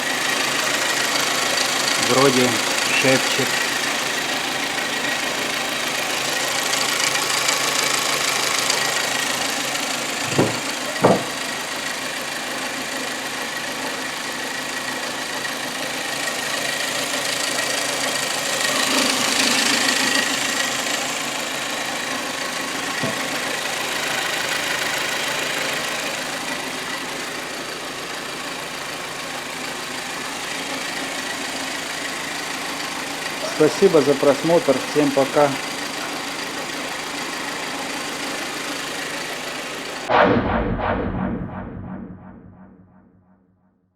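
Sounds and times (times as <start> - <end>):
car engine idling softly: 0.0 - 40.1
sharp knocks: 10.2 - 11.4.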